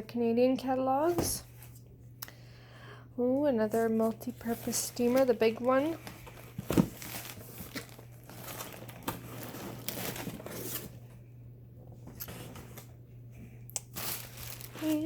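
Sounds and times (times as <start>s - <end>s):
steady low hum: 0.0s - 15.0s
packaging rustling and crinkling: 3.7s - 11.1s, 13.9s - 15.0s.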